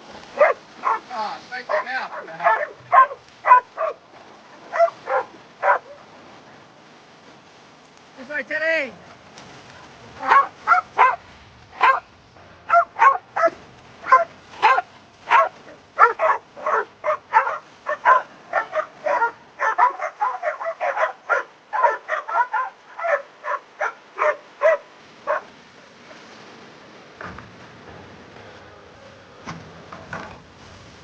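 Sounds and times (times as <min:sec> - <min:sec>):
dog barking high and yappy: 0:00.4 - 0:01.1, 0:01.7 - 0:04.0, 0:04.6 - 0:06.0, 0:10.2 - 0:11.2, 0:11.8 - 0:12.1, 0:12.7 - 0:25.5.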